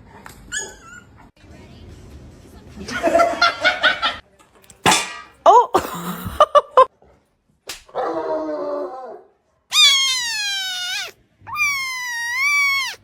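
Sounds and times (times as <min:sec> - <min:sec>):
dog yipping and whining: 0:00.5 - 0:01.2, 0:09.7 - 0:13.0
sharp crack: 0:04.7 - 0:05.4.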